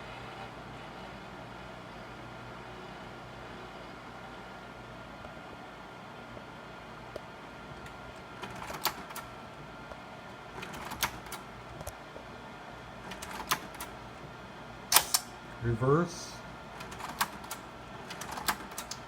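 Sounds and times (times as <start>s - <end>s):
projector hum: 0.0s - 19.0s
slide projector mechanical clacks: 8.3s - 9.3s, 10.5s - 11.9s, 13.1s - 14.0s, 16.8s - 19.0s.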